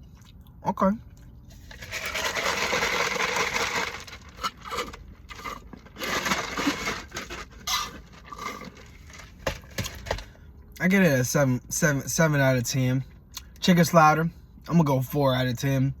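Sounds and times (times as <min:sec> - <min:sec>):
rustling and scraping: 0:01.5 - 0:10.3.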